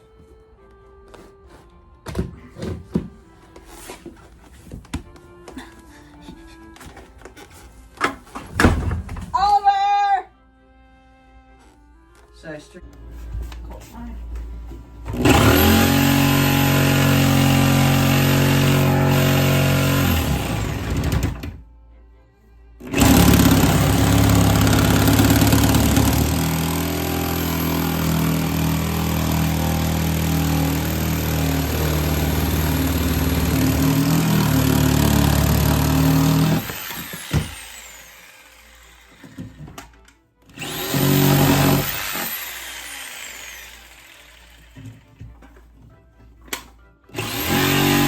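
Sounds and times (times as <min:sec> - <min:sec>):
electric jigsaw cutting: 0:15.1 - 0:21.6, 0:22.8 - 0:45.0, 0:47.1 - 0:48.0.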